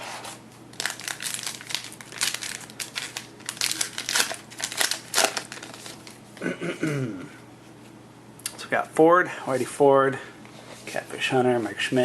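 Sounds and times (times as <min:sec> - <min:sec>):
wrapper crinkling as torn open: 0:00.7 - 0:06.2.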